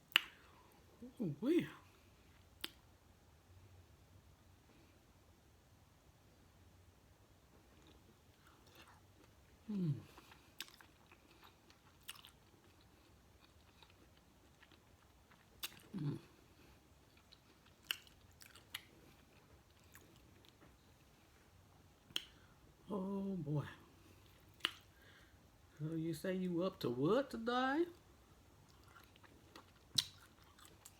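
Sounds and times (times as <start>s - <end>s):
chewing and biting: 7.7s - 16.3s, 17.0s - 20.8s, 28.6s - 30.9s.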